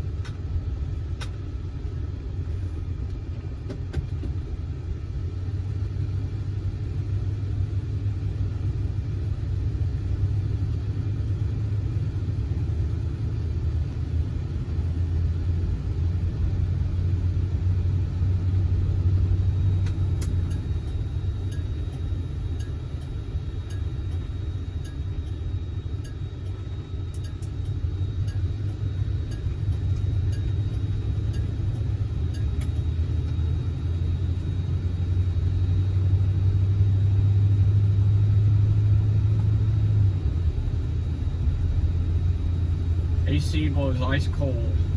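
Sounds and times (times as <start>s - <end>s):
car engine and road rumble: 0.0s - 44.9s.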